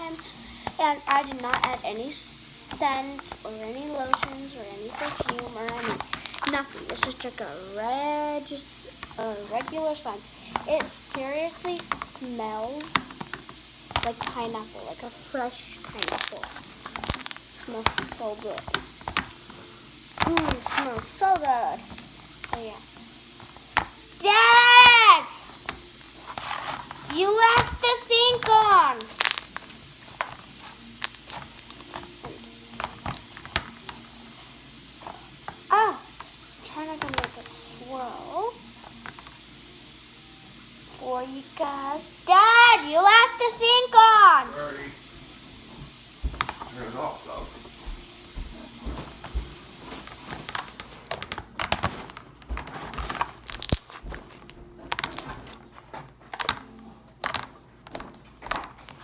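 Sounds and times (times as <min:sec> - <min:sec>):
faint steady hiss: 0:00.0 - 0:59.0
slime squishing with wet pops: 0:02.6 - 0:08.2, 0:15.8 - 0:34.0, 0:48.8 - 0:59.0
slime squished by hand: 0:27.5 - 0:32.1.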